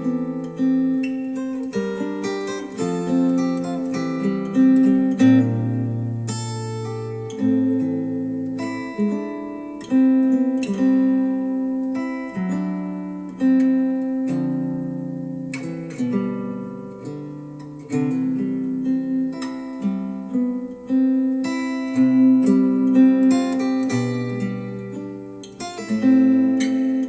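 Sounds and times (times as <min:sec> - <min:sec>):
acoustic guitar music: 0:00.0 - 0:27.0.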